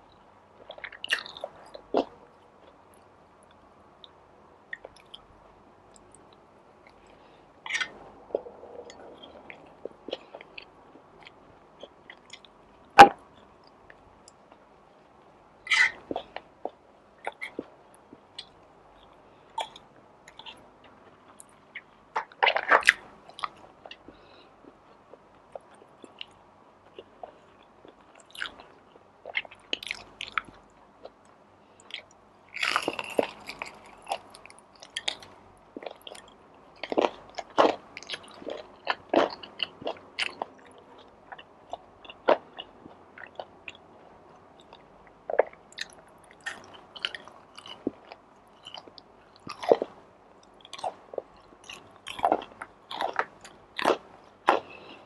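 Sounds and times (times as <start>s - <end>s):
person chewing food: 0.6s - 2.8s, 5.9s - 14.4s, 15.7s - 55.0s.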